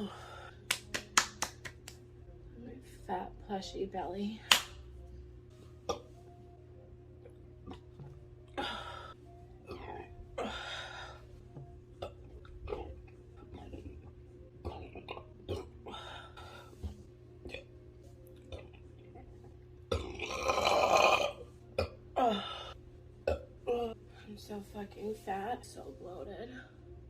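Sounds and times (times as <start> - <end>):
woman burping: 14.6 - 16.0, 19.9 - 22.5, 23.2 - 24.0.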